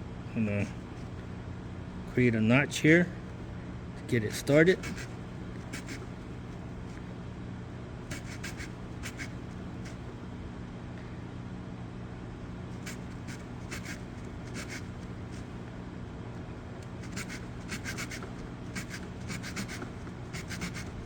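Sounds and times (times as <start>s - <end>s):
steady low hum: 0.0s - 21.0s
hand saw cutting wood: 13.7s - 14.8s, 17.0s - 21.0s.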